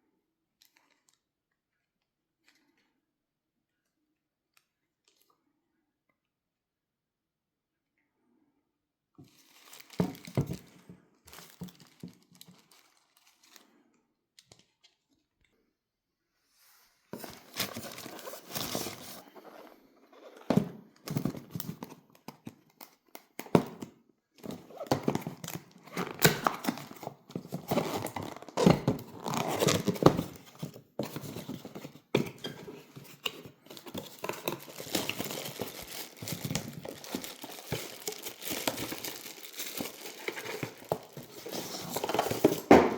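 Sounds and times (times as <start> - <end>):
wrapping crinkling and tearing: 11.3 - 13.8, 24.4 - 42.7.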